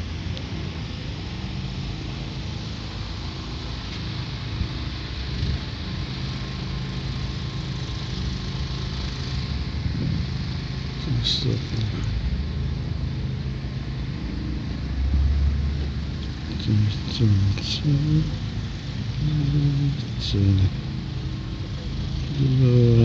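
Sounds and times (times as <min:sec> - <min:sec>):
outdoor noise hiss: 0:00.0 - 0:23.0
vehicle engine running at low revs: 0:00.0 - 0:23.0.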